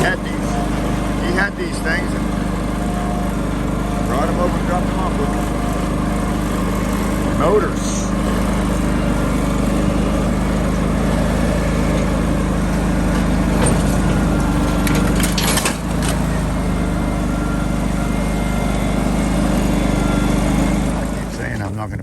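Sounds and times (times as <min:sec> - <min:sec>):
engine running: 0:00.0 - 0:22.0
metallic clanks: 0:11.8 - 0:16.4.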